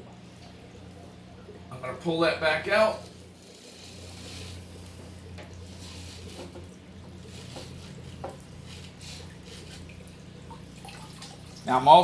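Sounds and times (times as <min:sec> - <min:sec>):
aquarium air pump humming: 0:00.0 - 0:12.0
sponge squishing: 0:02.8 - 0:11.6
water sloshing: 0:02.8 - 0:12.0.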